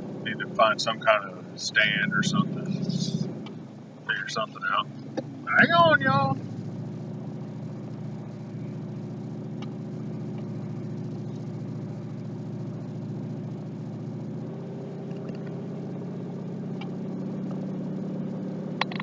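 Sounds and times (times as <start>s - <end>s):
car engine and road noise: 0.0s - 19.0s.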